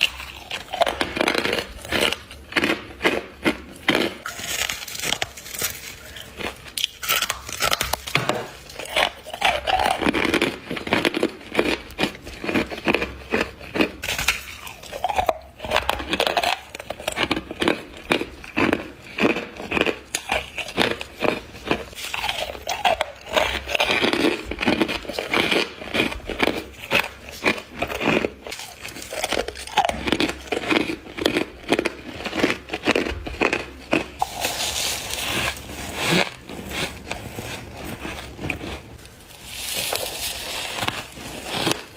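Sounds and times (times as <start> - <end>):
crisp crunching of frost: 0.0 - 41.9.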